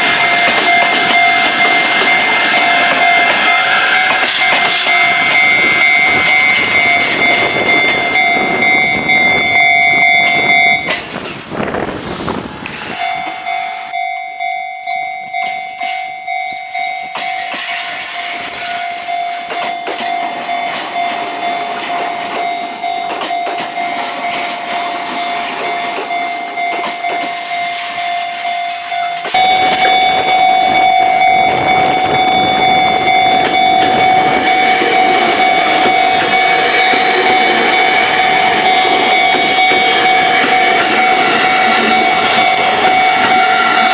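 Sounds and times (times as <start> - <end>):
level crossing alarm ringing: 0.0 - 11.1, 12.4 - 43.9
train rushing past on rails: 0.0 - 14.1, 15.3 - 43.9.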